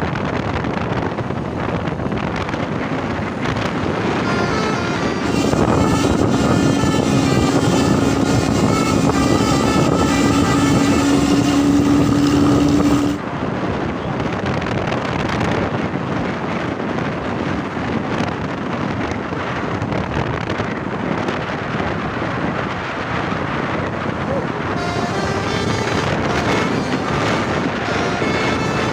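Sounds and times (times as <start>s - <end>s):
bus engine and exhaust: 0.0s - 28.9s
road noise: 0.0s - 28.9s
wind on microphone: 0.0s - 28.9s
steady high tone: 3.7s - 13.2s, 24.7s - 28.9s.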